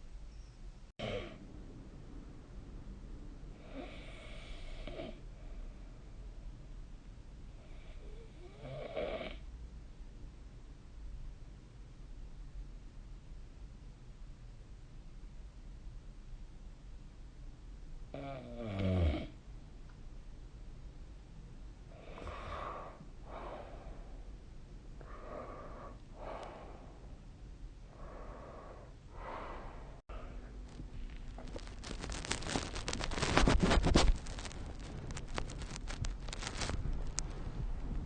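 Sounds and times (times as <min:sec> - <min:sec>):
sleep breathing: 0:03.6 - 0:05.8, 0:21.9 - 0:24.3, 0:25.0 - 0:27.2, 0:27.8 - 0:30.5
crackling rustling noise: 0:29.2 - 0:38.0.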